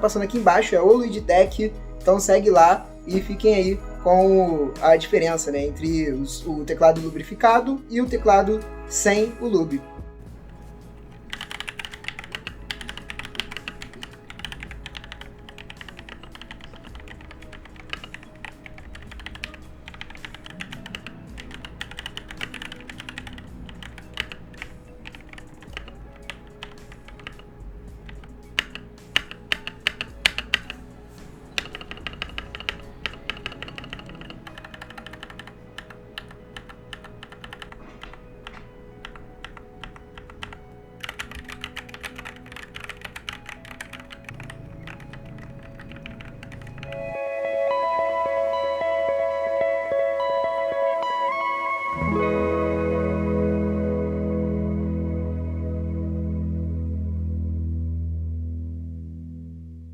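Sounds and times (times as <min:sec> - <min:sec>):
background music: 0:00.0 - 0:59.9
fast typing on mechanical keyboard: 0:10.4 - 0:47.1.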